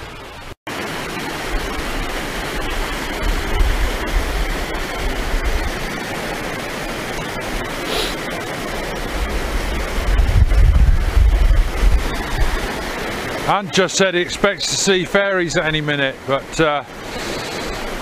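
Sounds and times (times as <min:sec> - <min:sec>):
white water rushing in stream: 0:00.0 - 0:18.0
wind buffeting microphone: 0:09.1 - 0:13.0.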